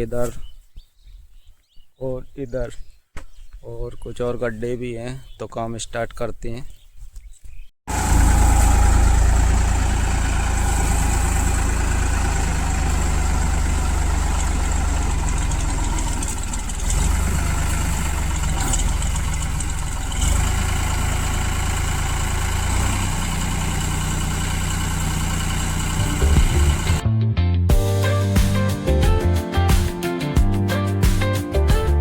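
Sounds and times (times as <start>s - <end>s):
tractor diesel engine running: 7.9s - 27.0s.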